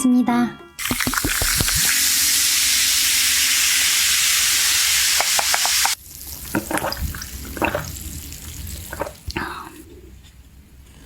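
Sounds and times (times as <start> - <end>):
loud steady hiss: 0.8 - 6.5.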